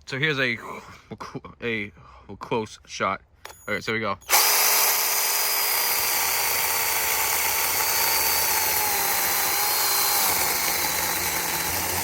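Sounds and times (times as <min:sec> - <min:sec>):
chainsaw cutting wood: 0:04.3 - 0:12.0.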